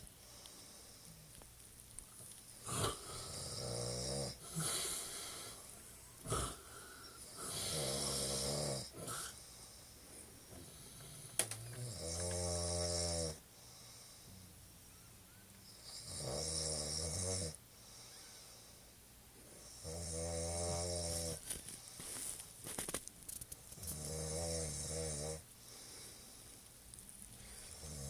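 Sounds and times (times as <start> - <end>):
man snoring: 2.6 - 9.4, 10.4 - 13.4, 15.8 - 17.6, 19.7 - 21.4, 23.8 - 25.4, 27.7 - 28.0.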